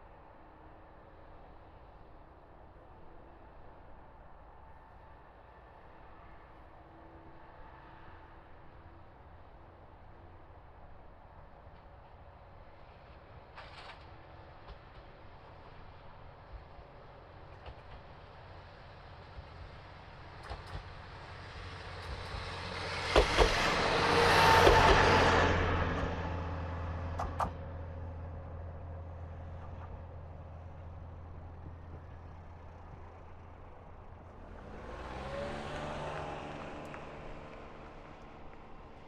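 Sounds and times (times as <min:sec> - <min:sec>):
rail and wheel noise: 0:00.0 - 0:39.0
low diesel drone: 0:18.2 - 0:39.0.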